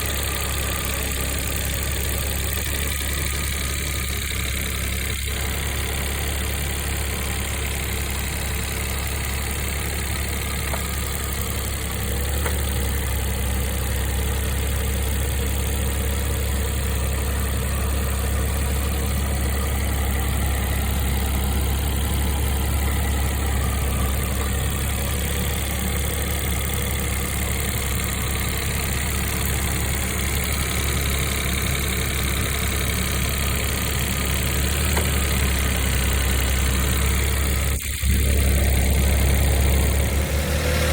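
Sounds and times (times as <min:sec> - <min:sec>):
car engine idling: 0:00.0 - 0:40.9
engine whirring: 0:17.2 - 0:40.9.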